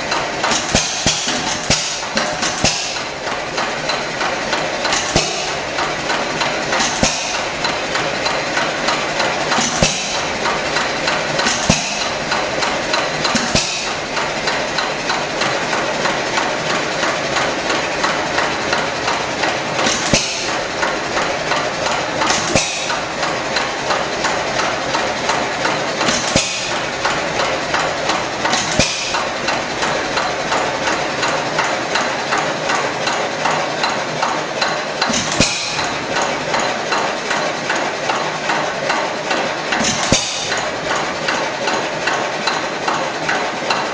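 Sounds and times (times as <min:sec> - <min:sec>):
stationary engine clattering: 0:00.0 - 0:43.9.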